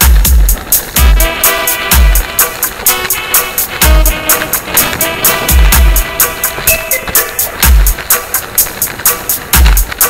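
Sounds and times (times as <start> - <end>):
kick drums: 0.0 - 10.0
synth melody: 1.0 - 8.7.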